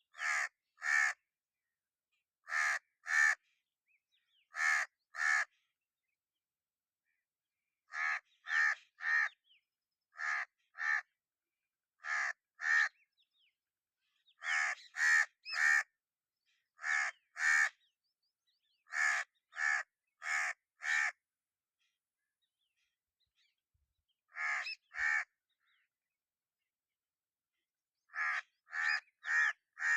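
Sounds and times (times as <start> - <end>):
crow cawing: 0.1 - 1.2, 2.4 - 3.4, 4.5 - 5.6, 7.9 - 9.4, 10.1 - 11.1, 12.0 - 13.0, 14.4 - 15.9, 16.8 - 17.8, 18.9 - 21.2, 24.3 - 25.3, 28.1 - 29.9.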